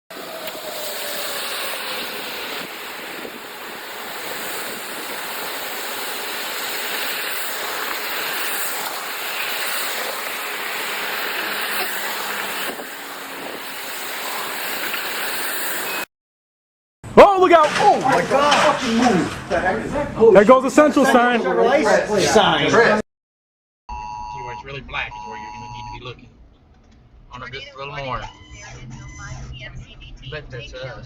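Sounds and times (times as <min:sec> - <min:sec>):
strong storm wind rushing: 0:00.1 - 0:16.0.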